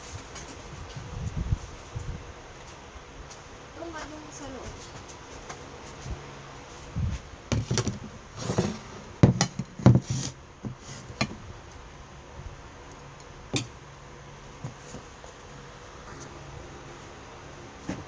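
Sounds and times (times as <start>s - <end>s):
knocks of hard objects handled: 7.5s - 11.4s, 13.5s - 13.7s.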